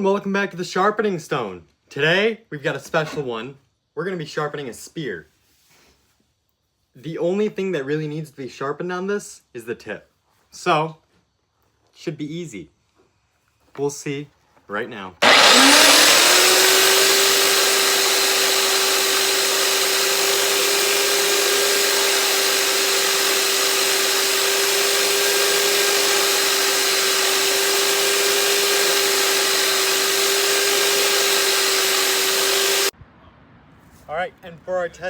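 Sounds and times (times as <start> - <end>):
electric grinder whining: 15.2 - 32.9
grinding hiss: 15.2 - 32.9.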